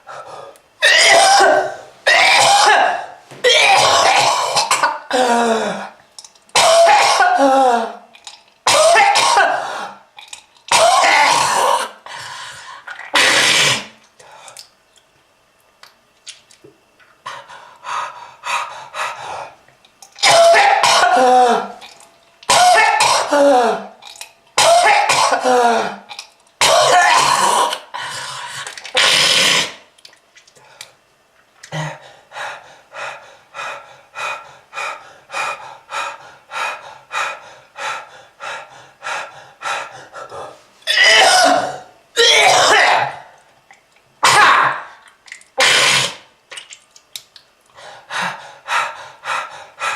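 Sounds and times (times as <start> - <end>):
person coughing: 0.8 - 5.9, 6.6 - 8.0, 8.7 - 9.7, 10.7 - 12.0, 20.2 - 21.8, 22.5 - 23.9, 24.6 - 26.0, 26.6 - 27.8, 40.9 - 43.3.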